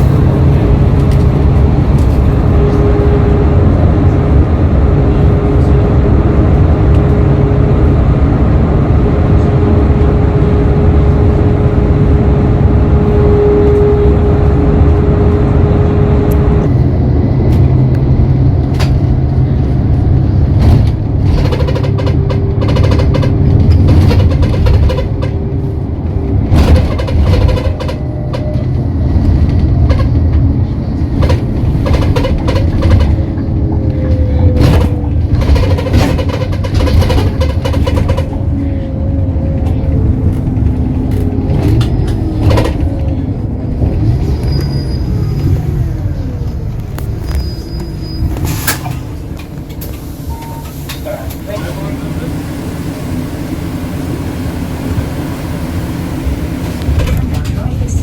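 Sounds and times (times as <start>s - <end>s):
coach engine and road rumble: 0.0s - 58.0s
drivetrain whine: 0.0s - 58.0s
knocks and rattles: 20.5s - 25.4s, 26.4s - 38.7s.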